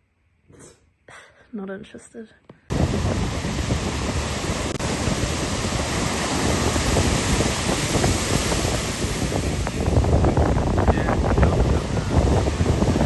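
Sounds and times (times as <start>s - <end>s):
wind buffeting microphone: 2.7s - 13.0s.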